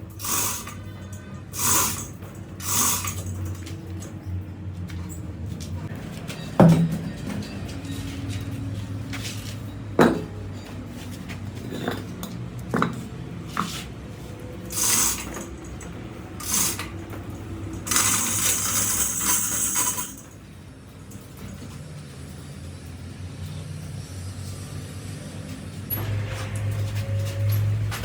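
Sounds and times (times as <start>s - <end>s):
hissing bursts: 0.2s - 0.8s, 1.6s - 3.4s, 14.7s - 15.4s
metal tools clinking: 0.2s - 4.3s, 4.9s - 13.8s, 14.7s - 22.5s.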